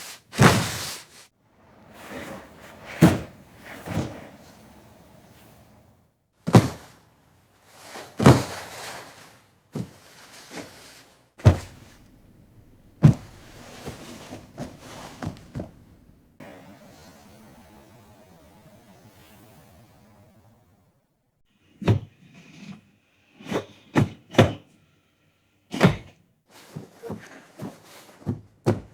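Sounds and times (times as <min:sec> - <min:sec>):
thuds and knocks: 0:11.4 - 0:16.2, 0:25.8 - 0:26.1, 0:28.2 - 0:28.9.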